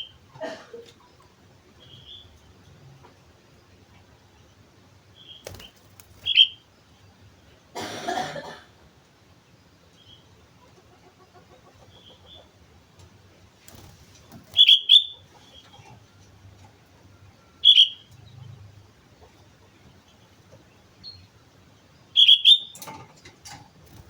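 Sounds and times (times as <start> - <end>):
bird chirping calls: 5.1 - 7.2, 13.8 - 16.2, 17.2 - 18.6, 19.2 - 22.9.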